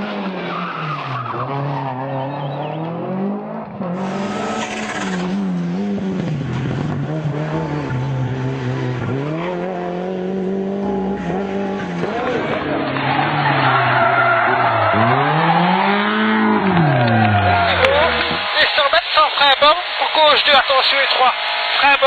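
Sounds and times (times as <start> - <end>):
rally car engine revving: 0.0 - 18.8
tyres skidding: 0.0 - 19.0.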